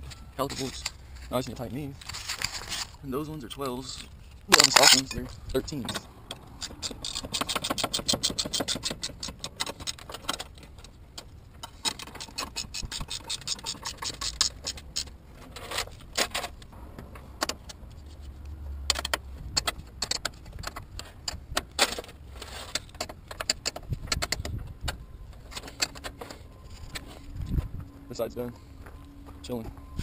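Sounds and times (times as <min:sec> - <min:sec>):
socket ratchet clicking: 0:06.3 - 0:10.4.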